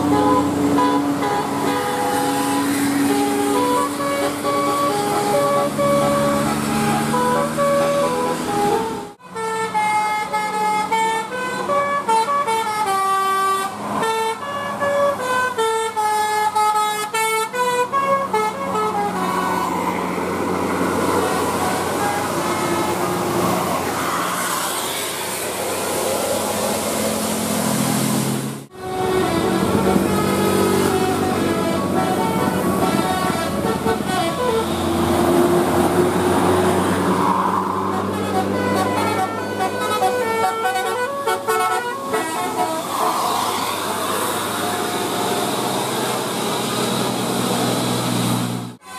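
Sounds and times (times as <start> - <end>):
multi-tone bus air horn tune: 0.0 - 48.9
vehicle engine and road noise: 0.0 - 48.9.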